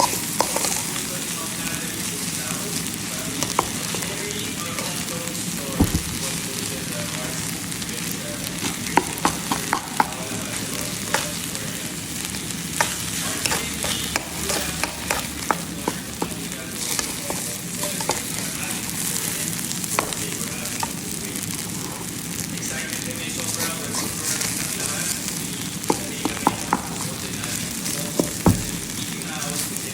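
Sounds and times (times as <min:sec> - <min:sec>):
rice sizzling in a hot pan: 0:00.0 - 0:29.9
spatula scraping a pan: 0:12.7 - 0:18.4.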